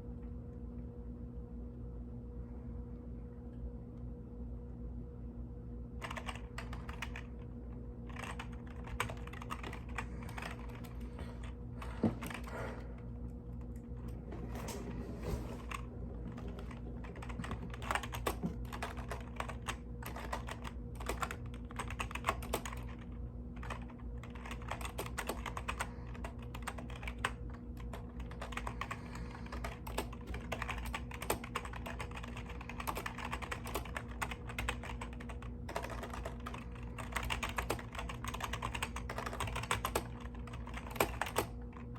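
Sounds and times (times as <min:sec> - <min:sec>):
steady low hum: 0:00.0 - 0:41.9
mechanical keyboard typing: 0:06.0 - 0:11.6, 0:12.2 - 0:12.5, 0:15.5 - 0:41.9.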